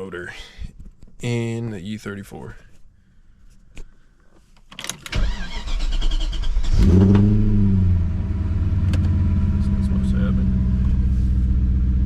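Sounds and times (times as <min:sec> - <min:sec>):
starter motor cranking: 0:05.1 - 0:07.3
car engine starting and idling: 0:05.1 - 0:12.0.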